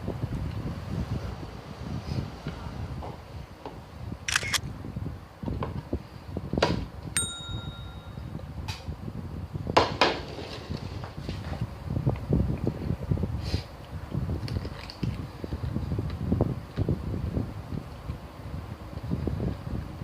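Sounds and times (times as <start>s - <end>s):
short ringing clink: 7.2s - 8.4s.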